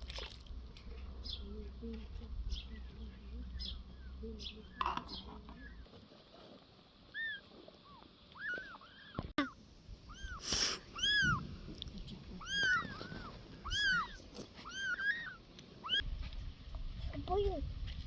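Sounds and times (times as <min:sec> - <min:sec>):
cat meowing: 0:07.1 - 0:11.4, 0:12.4 - 0:16.0.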